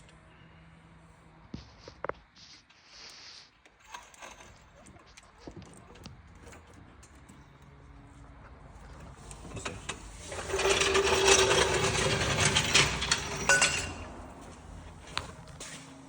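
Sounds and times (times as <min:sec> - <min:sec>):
power tool rattling: 0:09.3 - 0:15.1.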